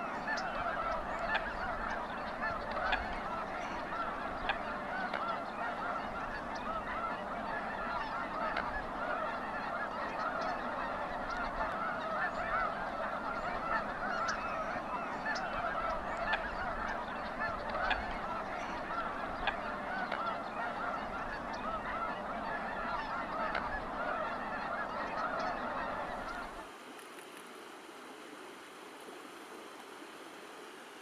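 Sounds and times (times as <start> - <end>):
flock of birds calling: 0.0 - 26.7
steady hiss: 26.3 - 31.0.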